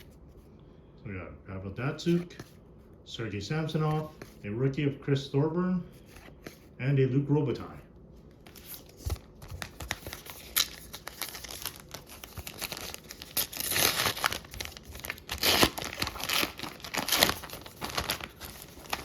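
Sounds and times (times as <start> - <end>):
wrapper crinkling and tearing: 8.5 - 19.0.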